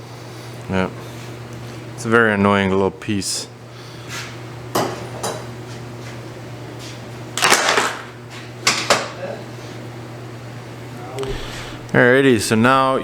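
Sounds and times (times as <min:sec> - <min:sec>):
steady low hum: 0:09.8 - 0:13.0.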